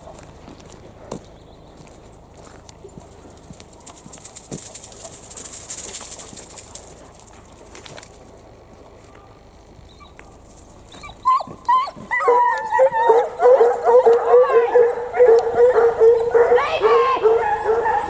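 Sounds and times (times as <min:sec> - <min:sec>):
hounds baying: 0:09.0 - 0:18.0.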